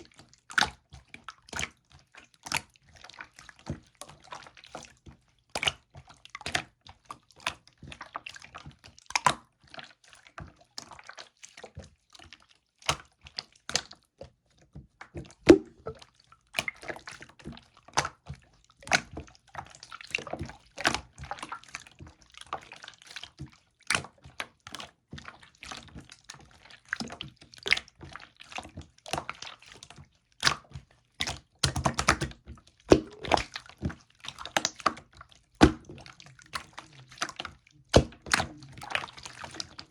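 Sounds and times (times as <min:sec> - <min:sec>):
slime squished by hand: 0:31.7 - 0:33.8.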